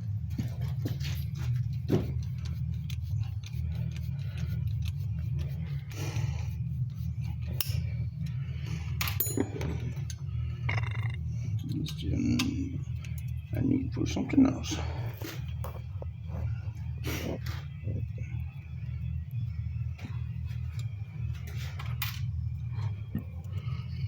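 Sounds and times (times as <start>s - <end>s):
low hum: 0.0s - 24.0s.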